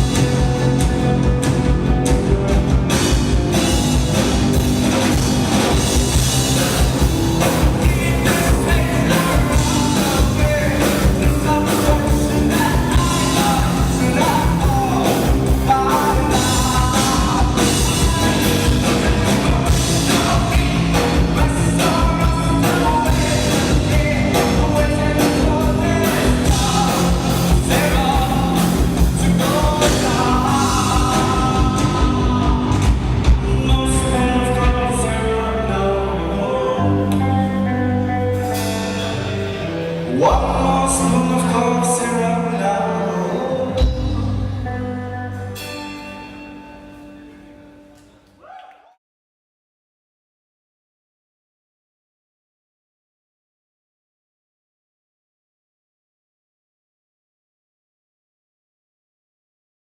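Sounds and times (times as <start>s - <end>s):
steady drum beat: 0.0s - 34.1s
rock band playing live: 0.0s - 48.2s
lead vocal singing: 4.0s - 39.2s, 40.0s - 45.4s.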